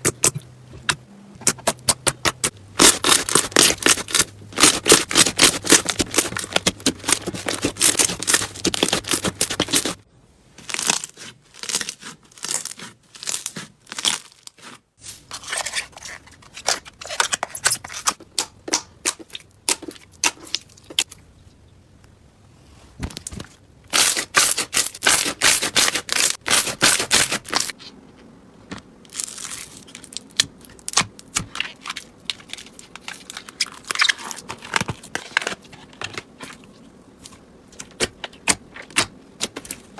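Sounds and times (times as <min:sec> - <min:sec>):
crunchy slime crackling: 0:01.4 - 0:10.0, 0:10.6 - 0:15.4, 0:29.0 - 0:39.9.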